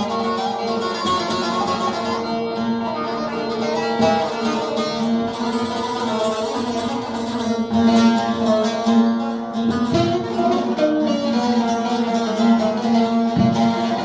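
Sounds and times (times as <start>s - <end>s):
plucked string melody over drone: 0.0s - 14.0s.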